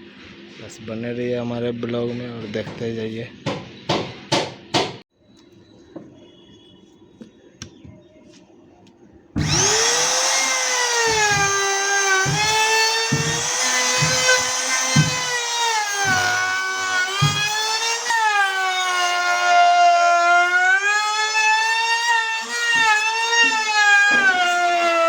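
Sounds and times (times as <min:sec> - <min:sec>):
router bit biting into wood: 0:09.4 - 0:25.0
trim router whining: 0:09.4 - 0:25.0.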